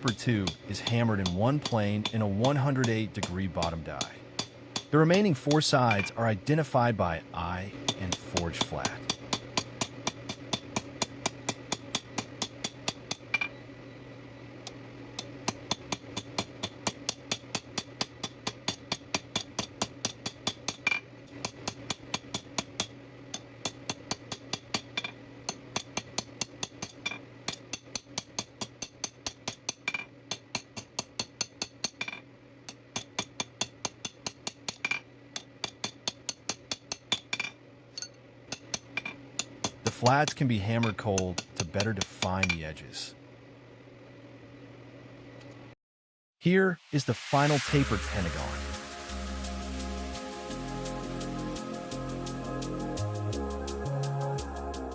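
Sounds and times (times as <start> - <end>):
steady low hum: 0.0 - 28.6.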